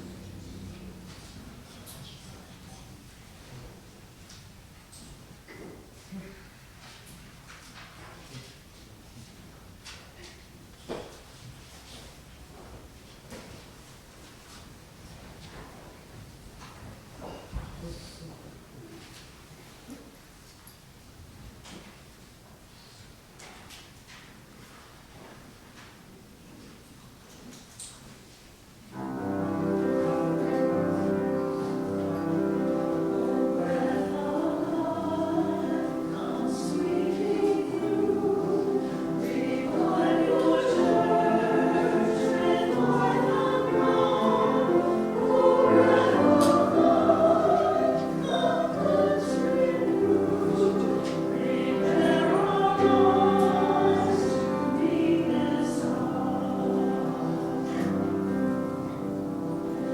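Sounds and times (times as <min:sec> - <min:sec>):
choir singing sacred music: 0:29.0 - 0:59.9.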